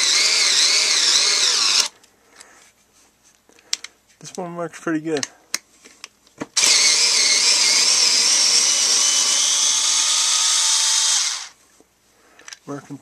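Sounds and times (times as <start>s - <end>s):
cordless screwdriver whining: 0.0s - 1.9s, 6.6s - 11.6s.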